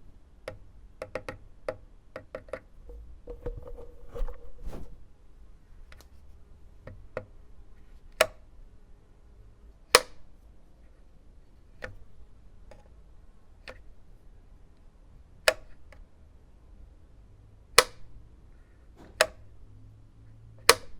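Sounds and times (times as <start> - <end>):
light switch clicks: 10.0 - 10.2, 17.8 - 18.1, 20.7 - 20.9.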